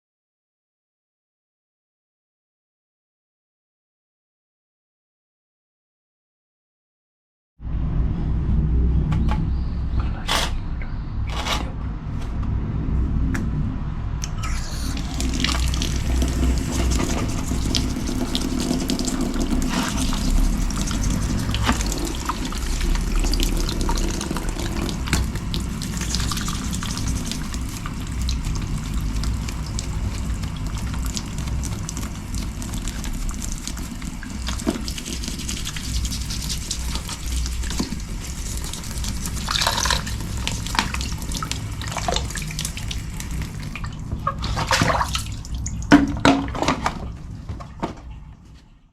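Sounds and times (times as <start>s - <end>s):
low rumble: 7.6s - 44.3s
running water: 14.2s - 48.6s.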